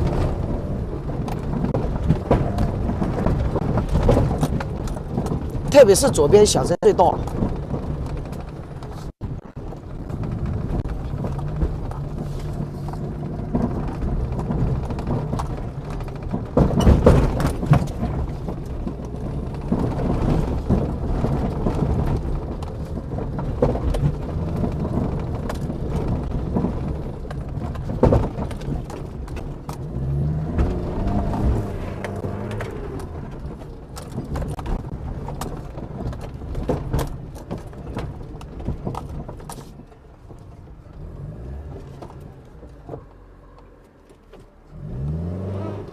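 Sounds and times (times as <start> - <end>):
car engine revving: 0.0 - 4.4, 29.6 - 34.9, 40.8 - 43.8, 44.6 - 45.9
chassis clunking and knocking: 0.0 - 41.0.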